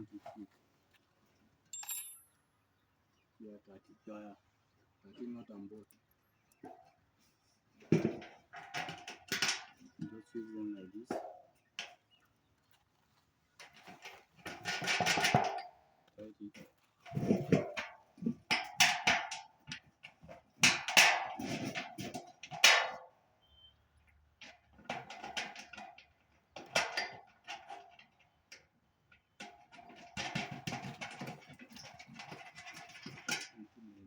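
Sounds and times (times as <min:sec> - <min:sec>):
metal bolts clinking and scraping: 0:01.7 - 0:02.4, 0:13.6 - 0:15.8, 0:29.4 - 0:33.6.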